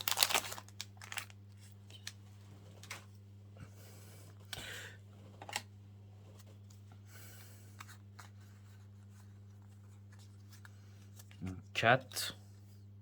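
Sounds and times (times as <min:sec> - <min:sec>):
trading cards rustling and clicking: 0:00.0 - 0:02.2, 0:05.3 - 0:05.7
steady low hum: 0:00.0 - 0:13.0.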